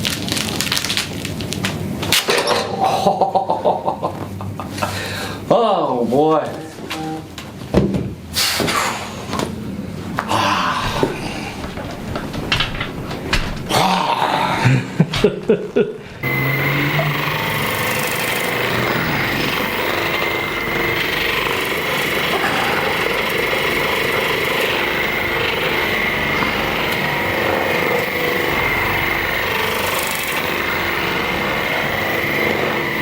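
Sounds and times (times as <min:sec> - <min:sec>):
small electric motor running: 0:16.2 - 0:33.0.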